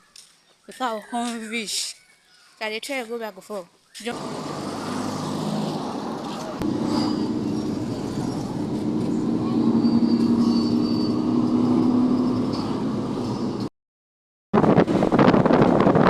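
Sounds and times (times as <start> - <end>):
vehicle engine and road hum: 4.0 - 13.7.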